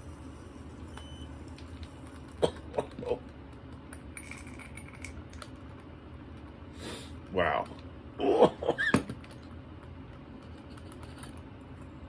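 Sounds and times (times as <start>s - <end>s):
man coughing: 2.4s - 3.2s, 8.2s - 8.9s.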